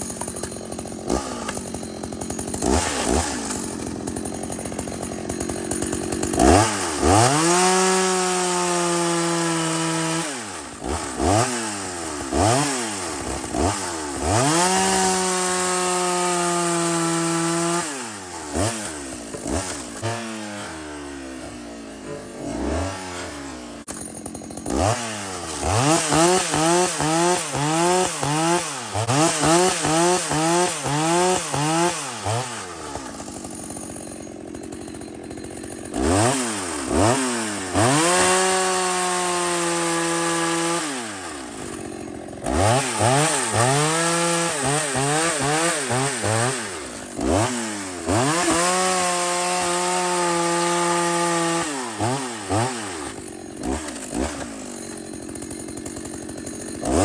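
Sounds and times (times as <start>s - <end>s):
chainsaw engine revving: 0.0s - 57.0s.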